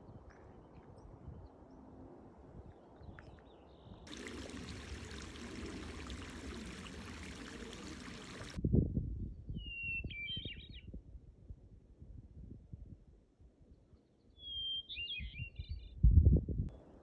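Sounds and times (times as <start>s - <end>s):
running water hiss: 4.1s - 8.6s.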